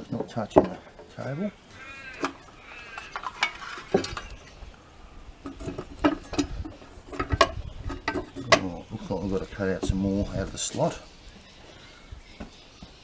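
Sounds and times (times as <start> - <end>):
metallic clicks and knocks: 5.4 - 8.7.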